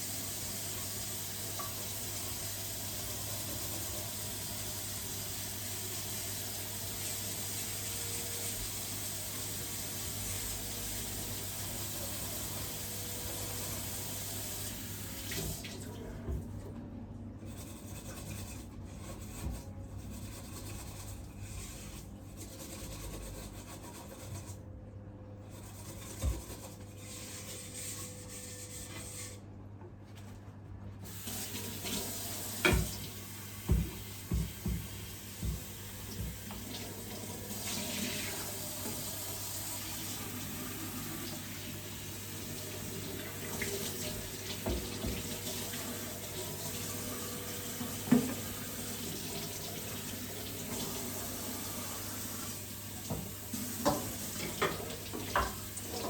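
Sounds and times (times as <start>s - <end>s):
tap water running into sink: 0.0s - 16.4s, 31.0s - 56.0s
sharp knocks in sink: 33.7s - 36.4s.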